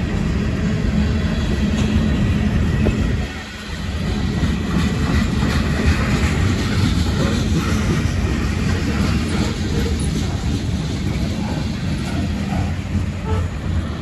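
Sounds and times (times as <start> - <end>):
freight train wheels rumbling: 0.0 - 14.0.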